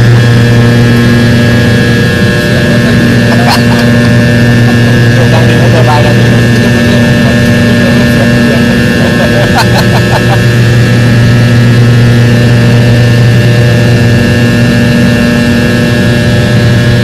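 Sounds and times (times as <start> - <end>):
aircraft engines droning: 0.0 - 17.0.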